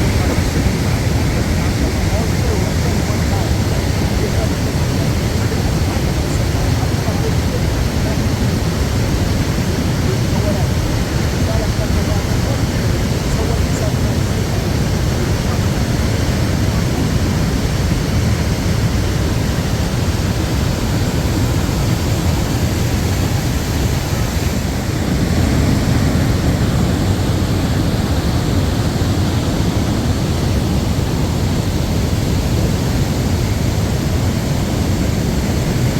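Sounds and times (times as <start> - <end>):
waterfall roaring: 0.0 - 35.9.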